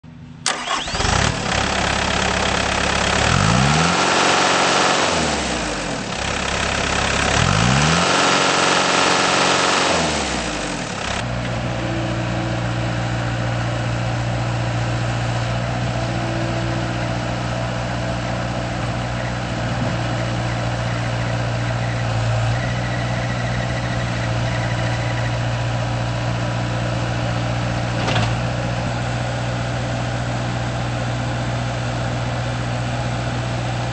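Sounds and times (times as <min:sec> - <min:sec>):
diesel engine revving and idling: 0:00.4 - 0:33.9.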